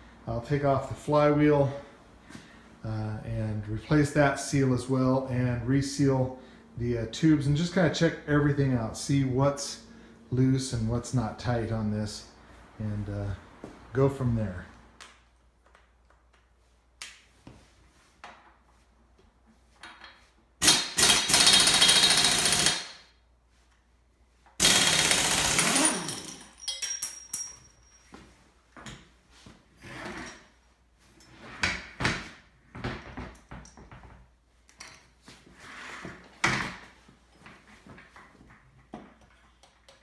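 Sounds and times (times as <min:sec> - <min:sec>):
power tool whirring: 0:20.6 - 0:22.9, 0:24.6 - 0:26.4
metal tools clinking: 0:25.7 - 0:28.2.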